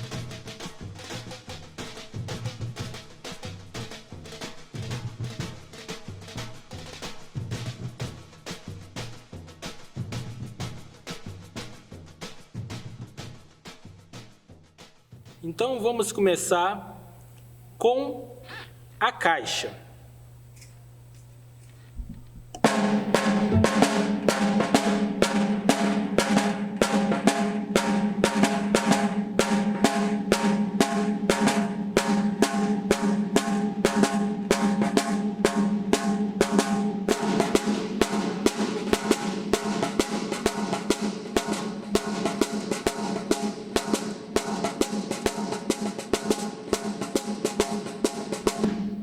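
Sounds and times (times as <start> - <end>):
snare drum rhythm: 22.1 - 24.8.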